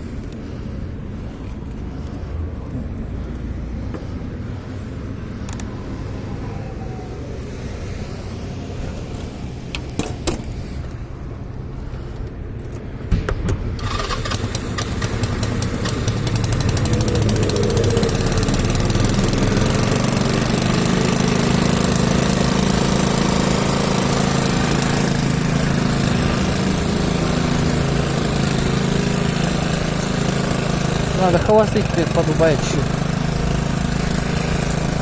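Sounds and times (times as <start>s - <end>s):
motorcycle engine idling: 13.8s - 35.0s.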